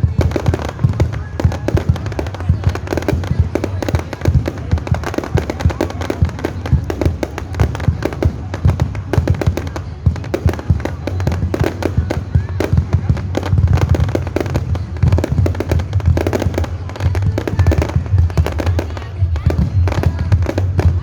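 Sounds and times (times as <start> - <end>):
fireworks bangs and crackles: 0.0 - 21.0.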